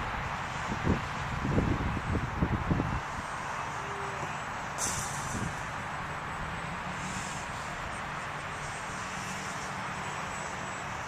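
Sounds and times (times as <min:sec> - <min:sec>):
wind buffeting microphone: 0:00.0 - 0:03.6, 0:05.2 - 0:06.6.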